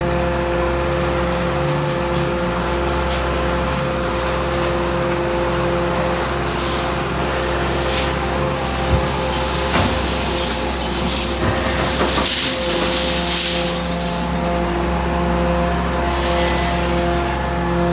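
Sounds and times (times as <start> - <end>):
hydraulic unit humming and whining: 0.0 - 17.9.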